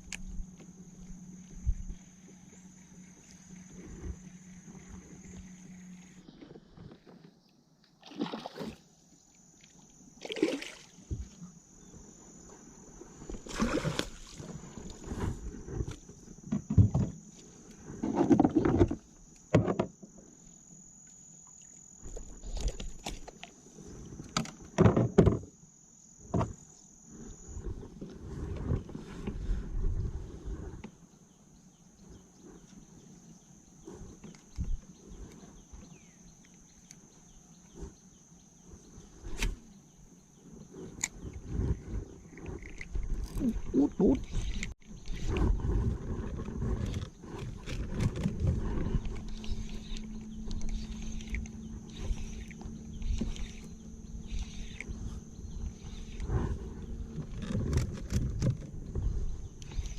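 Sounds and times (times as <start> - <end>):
high-pitched insect drone: 0.0 - 6.3, 8.3 - 27.9, 31.1 - 45.6, 46.8 - 57.4
paddle splashing: 8.0 - 8.9, 13.3 - 15.6.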